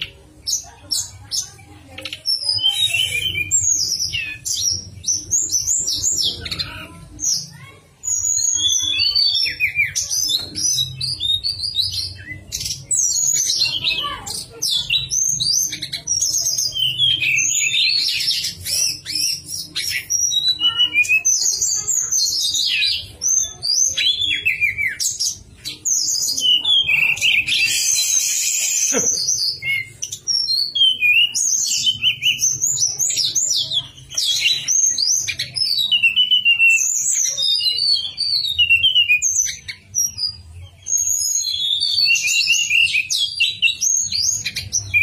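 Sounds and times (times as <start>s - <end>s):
bird singing whistled chirps: 2.3s - 6.3s, 22.4s - 45.0s.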